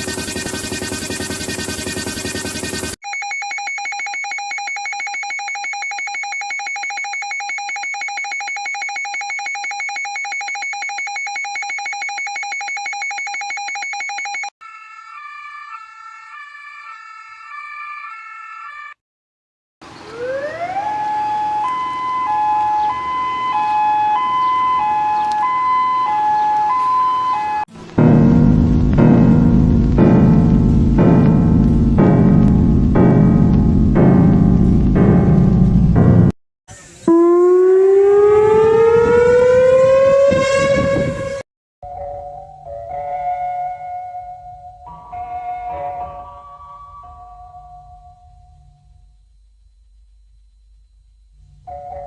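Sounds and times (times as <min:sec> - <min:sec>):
rapidly pulsing buzzy alarm tone: 0:00.0 - 0:14.5
stepping electronic tones: 0:00.0 - 0:14.5
warbling alarm tone: 0:00.0 - 0:14.5, 0:20.2 - 0:36.3, 0:37.1 - 0:41.4.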